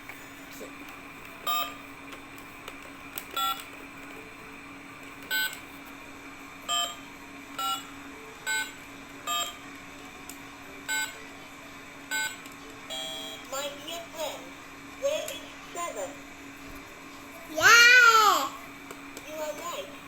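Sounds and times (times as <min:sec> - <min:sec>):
toy remote electronic beeps: 0:08.5 - 0:09.6, 0:12.1 - 0:13.5.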